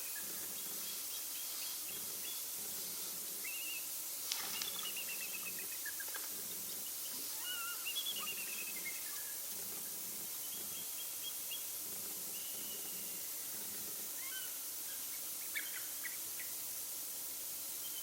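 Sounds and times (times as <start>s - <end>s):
steady hiss: 0.0s - 18.0s
ducks calling with high chirps: 7.1s - 9.4s.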